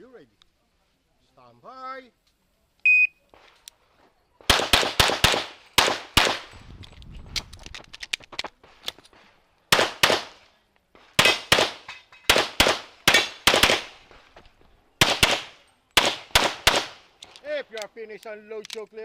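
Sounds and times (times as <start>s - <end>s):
pistol firing rapid shots: 4.5s - 6.4s, 9.7s - 10.3s, 11.2s - 13.9s, 15.0s - 17.0s.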